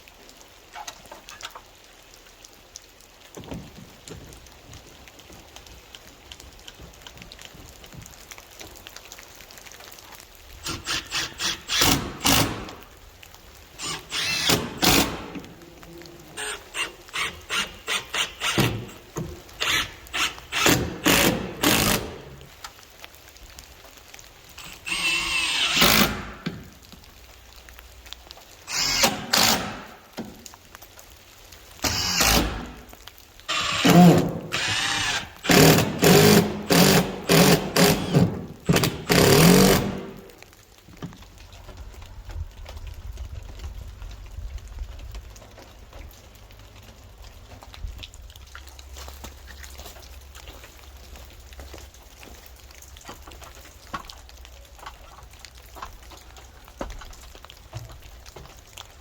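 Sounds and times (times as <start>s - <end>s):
power drill bursts: 10.6s - 12.8s, 13.8s - 15.4s, 16.4s - 19.0s, 19.6s - 22.4s, 24.6s - 26.4s, 28.7s - 29.9s, 31.8s - 32.8s, 33.5s - 40.2s.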